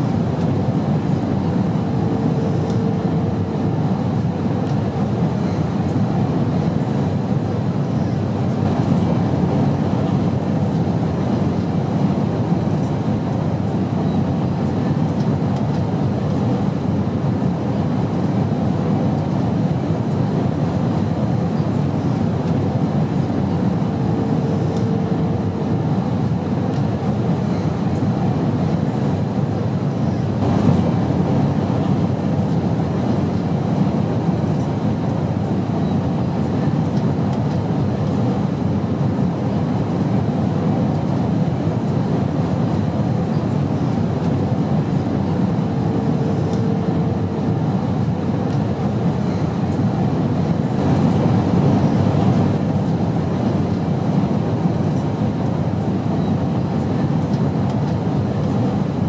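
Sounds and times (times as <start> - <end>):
airplane engine drone: 0.0 - 59.0
faint hum: 29.9 - 34.7.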